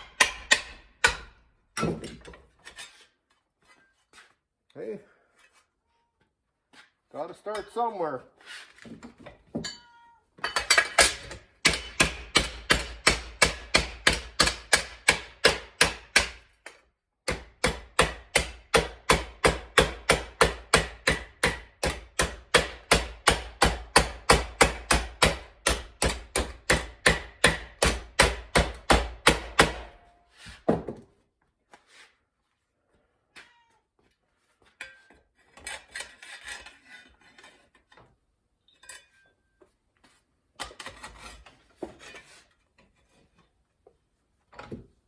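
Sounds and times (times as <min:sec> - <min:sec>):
hammering on sheet steel: 0:00.0 - 0:01.4, 0:11.6 - 0:16.5, 0:17.2 - 0:30.1.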